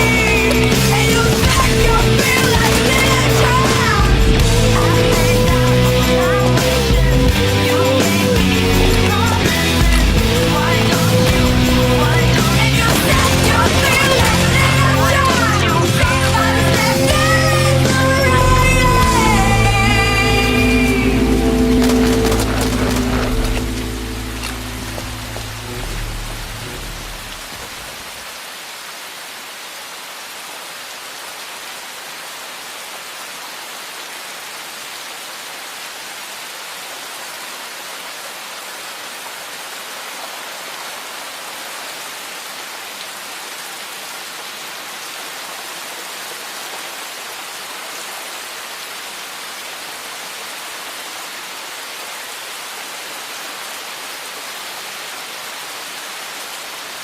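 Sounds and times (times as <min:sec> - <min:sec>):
low music tones: 0:00.0 - 0:28.0
steady rain falling: 0:00.0 - 0:57.0.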